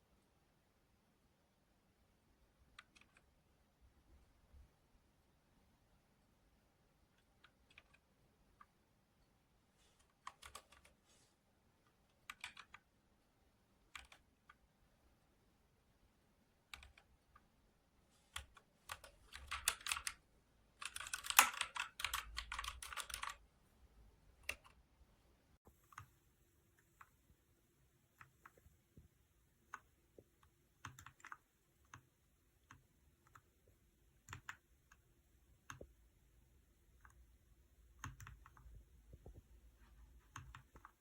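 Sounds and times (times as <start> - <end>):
mechanical keyboard typing: 2.6 - 3.4, 7.1 - 8.9, 10.0 - 11.0, 11.8 - 13.0, 13.8 - 14.7, 16.6 - 17.5, 18.4 - 23.4, 24.3 - 24.9, 29.7 - 36.0, 37.9 - 39.4, 40.1 - 41.0.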